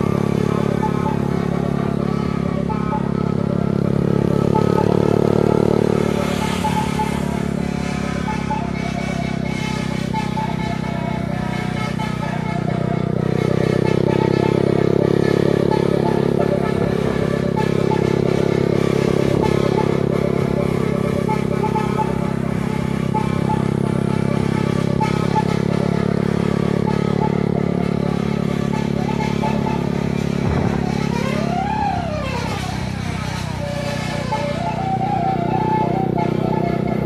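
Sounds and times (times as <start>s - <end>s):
vehicle engine running steadily: 0.0s - 37.0s.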